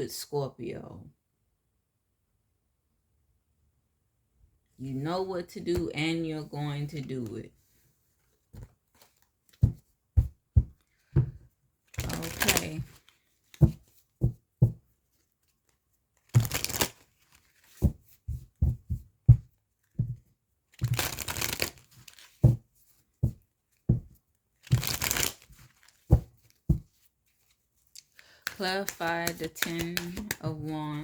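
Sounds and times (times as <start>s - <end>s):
soft thumps of cards: 8.5s - 14.8s, 17.6s - 27.0s
cards riffling: 11.9s - 13.2s, 16.2s - 17.8s, 20.8s - 22.4s, 24.6s - 26.8s, 27.4s - 31.0s.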